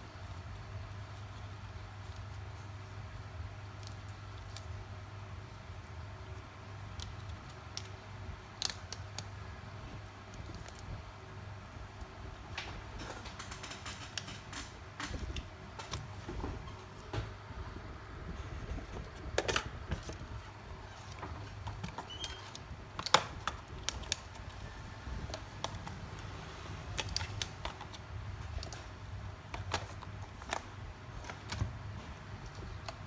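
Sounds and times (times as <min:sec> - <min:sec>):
small tools clicking and tapping: 0:12.5 - 0:16.2, 0:25.2 - 0:33.0.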